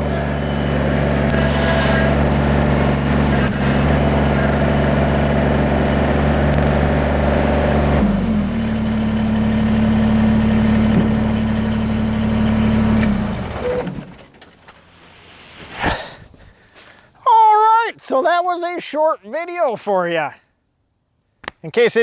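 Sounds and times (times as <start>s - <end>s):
diesel tractor engine running: 0.0s - 15.2s.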